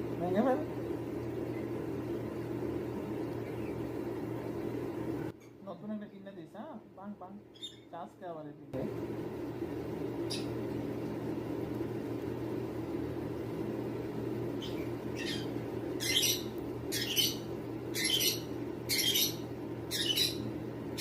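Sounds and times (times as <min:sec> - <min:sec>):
steady low hum: 0:00.0 - 0:21.0
bird squawking: 0:07.5 - 0:07.9, 0:14.6 - 0:20.5.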